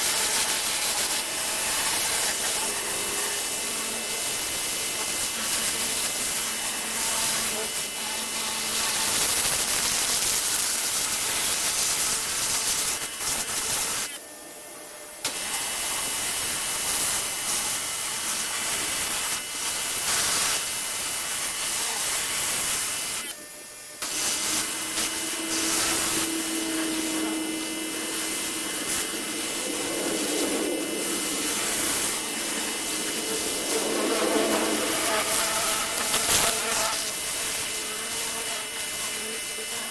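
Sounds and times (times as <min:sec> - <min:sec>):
pressure washer spraying: 0:00.0 - 0:14.1, 0:24.0 - 0:39.2.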